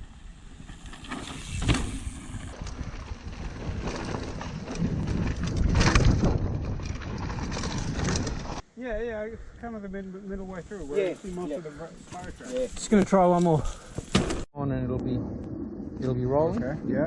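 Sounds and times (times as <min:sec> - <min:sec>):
bike tyres rumbling on dirt: 0:00.0 - 0:08.6
wind on microphone: 0:01.5 - 0:08.6.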